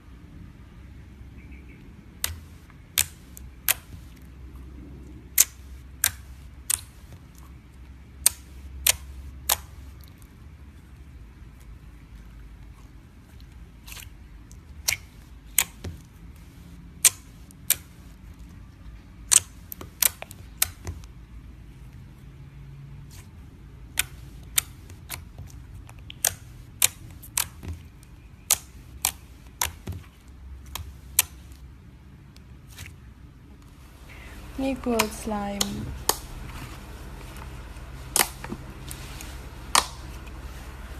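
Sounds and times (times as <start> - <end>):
low steady hum: 0.0 - 40.9
slime clicking and popping: 2.2 - 4.2, 5.3 - 7.2, 8.2 - 10.2, 13.9 - 16.1, 19.2 - 21.1, 23.9 - 31.6, 38.1 - 38.6, 39.7 - 40.1.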